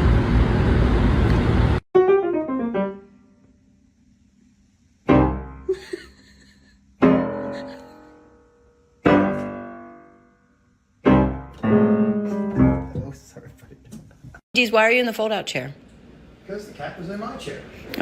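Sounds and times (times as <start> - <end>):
piano chords ringing: 2.0 - 3.8, 5.0 - 5.8, 7.0 - 13.6.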